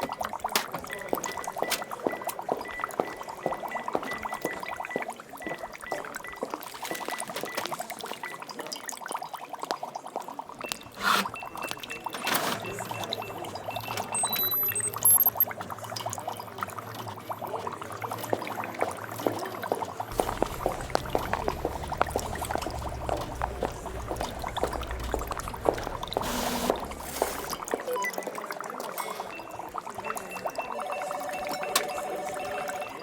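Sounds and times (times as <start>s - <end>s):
liquid bubbling and pouring: 0.0s - 12.0s, 12.7s - 30.8s
short high beeps: 10.7s - 15.4s, 20.1s - 28.3s, 30.1s - 33.0s
low hum: 20.1s - 27.6s.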